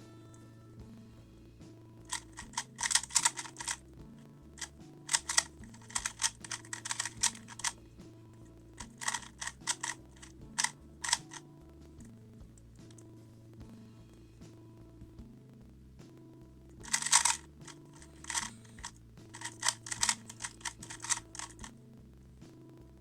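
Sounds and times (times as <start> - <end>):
puzzle cube clicking turns: 2.1 - 3.8, 4.6 - 7.8, 8.8 - 11.4, 16.8 - 21.7.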